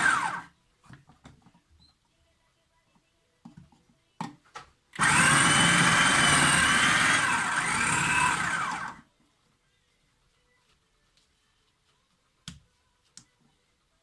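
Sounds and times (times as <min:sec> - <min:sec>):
food processor chopping: 0:00.0 - 0:00.4, 0:05.0 - 0:09.0.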